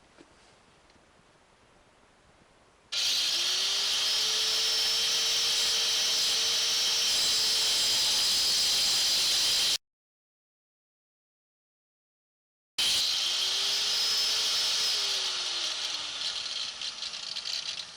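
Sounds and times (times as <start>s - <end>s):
cut-off wheel grinding metal: 3.0s - 9.8s, 12.8s - 17.9s.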